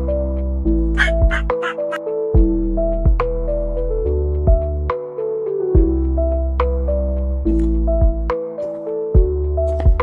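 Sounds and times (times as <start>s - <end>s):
soft gentle background music: 0.0s - 10.0s.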